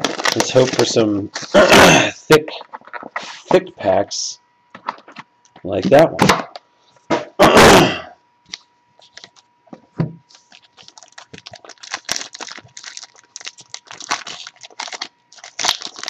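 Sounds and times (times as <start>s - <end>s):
card wrappers tearing and crinkling: 0.0s - 1.7s, 10.2s - 16.0s
faint steady hum: 0.0s - 16.0s.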